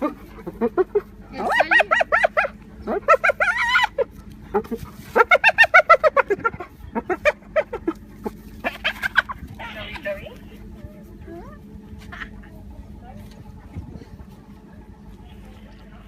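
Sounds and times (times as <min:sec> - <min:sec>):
person laughing: 0:03.2 - 0:08.0.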